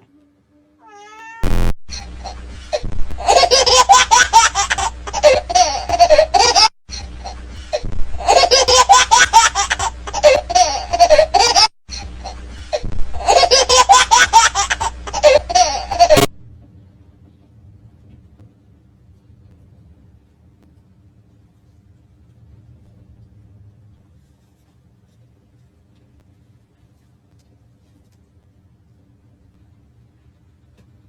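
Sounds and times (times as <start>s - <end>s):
person laughing hard: 1.9s - 16.3s.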